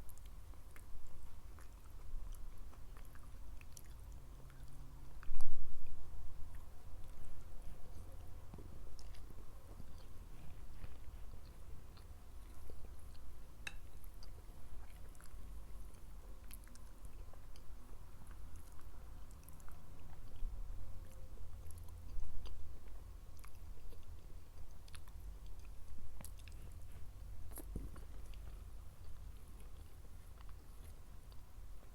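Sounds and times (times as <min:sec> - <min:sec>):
person chewing food: 0:00.0 - 0:31.9.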